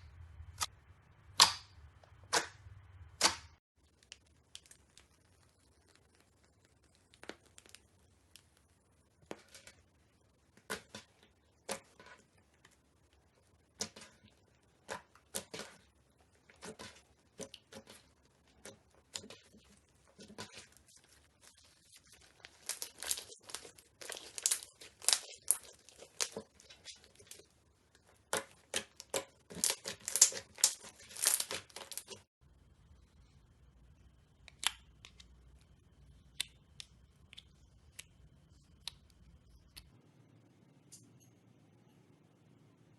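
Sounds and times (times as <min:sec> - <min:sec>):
slime crackling and popping: 0:03.2 - 0:08.8, 0:16.5 - 0:32.2.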